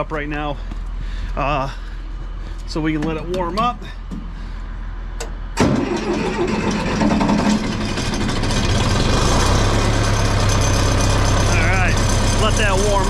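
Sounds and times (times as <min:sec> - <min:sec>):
tractor engine starting and idling: 0:05.4 - 0:13.0.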